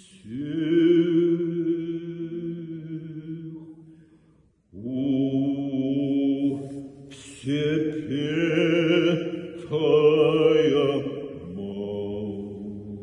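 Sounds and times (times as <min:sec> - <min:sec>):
church chant on held notes: 0:00.0 - 0:04.0, 0:04.7 - 0:13.0.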